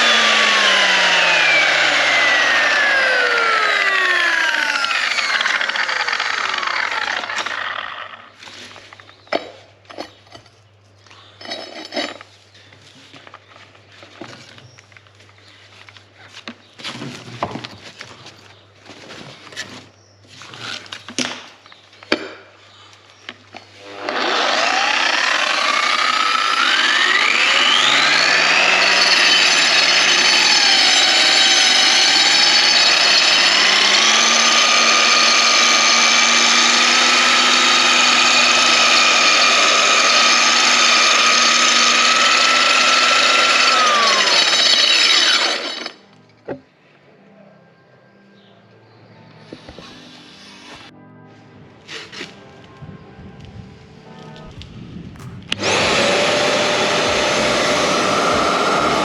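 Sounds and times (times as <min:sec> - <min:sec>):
sander motor whining: 0:00.0 - 0:08.4, 0:23.8 - 0:46.0, 0:54.6 - 0:59.0.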